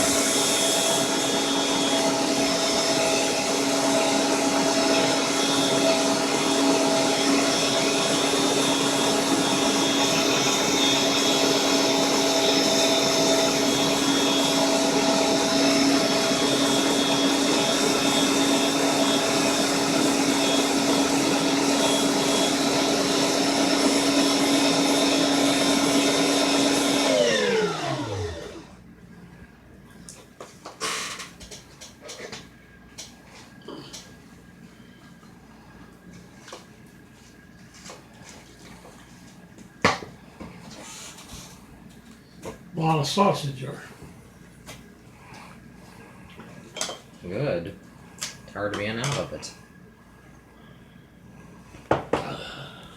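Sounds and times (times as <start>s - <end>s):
electric meat grinder motor: 0.0s - 28.8s.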